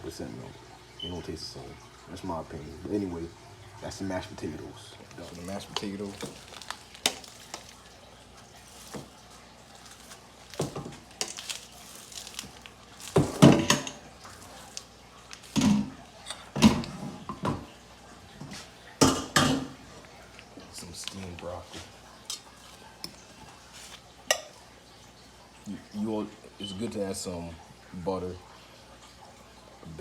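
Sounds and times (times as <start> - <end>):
utensils clinking against dishes: 5.2 - 7.8, 9.8 - 14.8, 15.4 - 17.6, 22.3 - 23.2.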